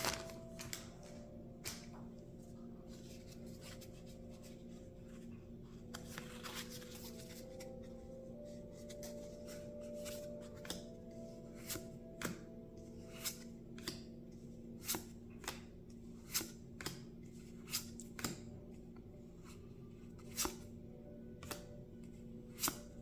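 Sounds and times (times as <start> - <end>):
faint background music: 0.0 - 23.0.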